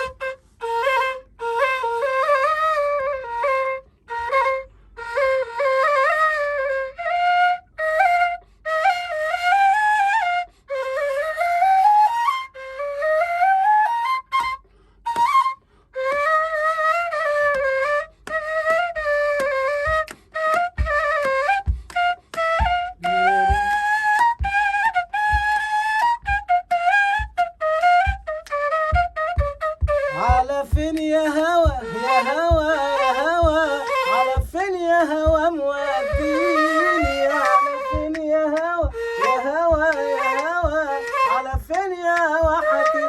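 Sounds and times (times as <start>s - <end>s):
reed flute melody: 0.0s - 43.0s
short breaths: 3.8s - 5.1s, 14.6s - 16.0s, 20.1s - 20.4s, 21.7s - 22.3s
low thumps: 27.1s - 42.7s.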